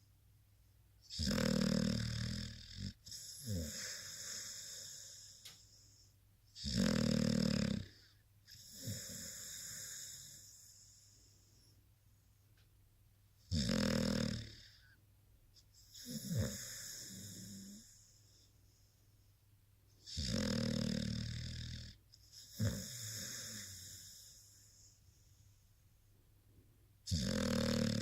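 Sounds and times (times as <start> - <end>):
dog snoring: 1.1 - 11.5, 13.4 - 15.0, 15.7 - 18.5, 20.0 - 25.0, 27.0 - 28.0.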